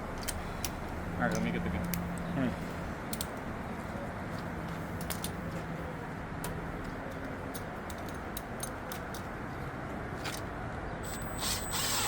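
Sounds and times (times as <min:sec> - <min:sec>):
tools and engine parts clinking: 0:05.0 - 0:05.6, 0:06.8 - 0:09.4.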